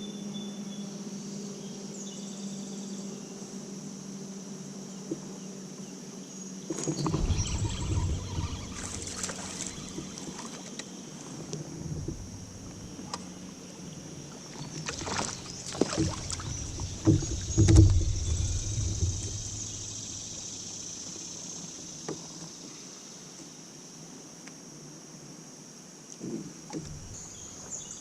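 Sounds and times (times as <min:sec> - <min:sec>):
water moving against hull: 0:06.6 - 0:22.7, 0:26.4 - 0:28.0
knocks against kayak hull: 0:14.8 - 0:19.9.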